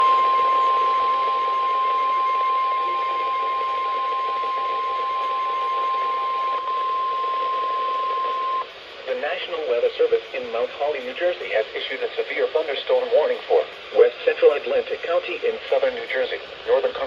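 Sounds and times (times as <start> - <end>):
steady alarm tone: 0.0 - 8.8
radio static: 0.0 - 17.0.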